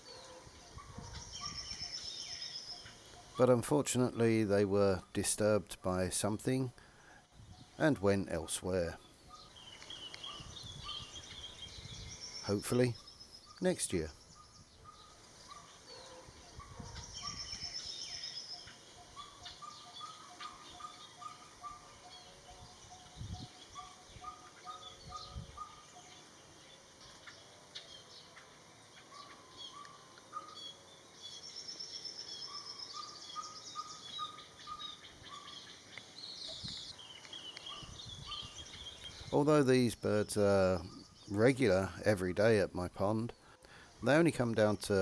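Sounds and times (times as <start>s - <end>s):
high bird trill: 0.0s - 5.6s, 6.2s - 26.6s, 29.0s - 45.0s
birds giving high notes: 7.8s - 27.2s.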